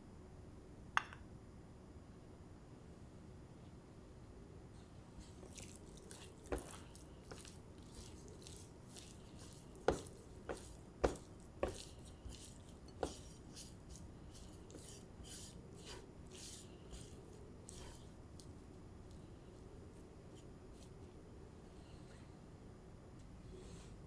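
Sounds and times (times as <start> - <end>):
wet handling noises: 5.2 - 19.7
rustling: 5.2 - 21.0.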